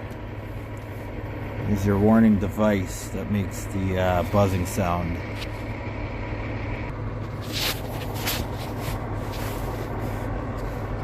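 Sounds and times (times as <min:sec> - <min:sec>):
diesel truck engine idling: 0:00.0 - 0:11.0
handling noises: 0:07.2 - 0:11.0.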